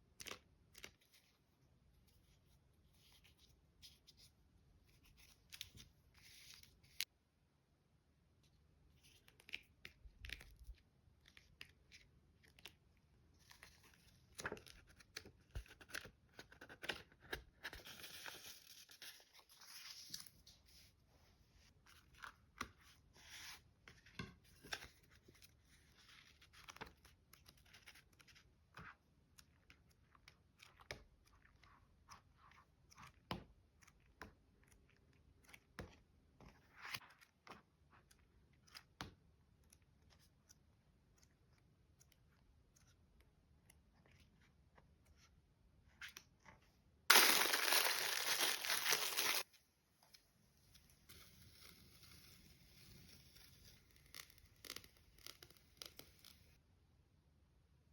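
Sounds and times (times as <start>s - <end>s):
packaging rustle: 47.1s - 49.4s
paper and plastic packaging handling: 47.1s - 49.4s.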